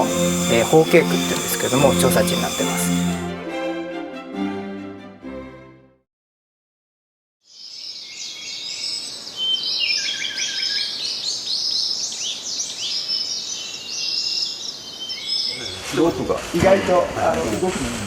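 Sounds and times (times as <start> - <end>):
birds chirping: 0.0 - 3.1, 7.5 - 17.2.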